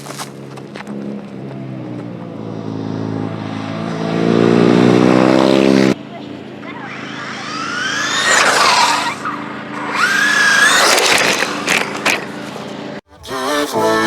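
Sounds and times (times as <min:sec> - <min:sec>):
rc truck motor whine: 0:06.3 - 0:13.0.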